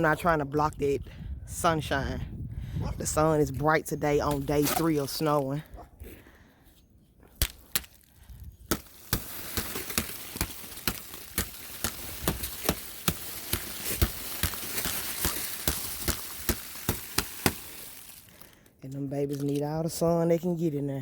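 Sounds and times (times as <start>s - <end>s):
ice crunching and cracking: 7.4s - 20.2s
crackling hiss: 8.7s - 18.7s.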